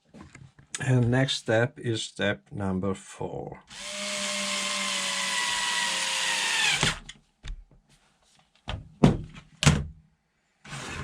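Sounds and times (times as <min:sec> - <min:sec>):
electric screwdriver motor: 0:03.7 - 0:07.0.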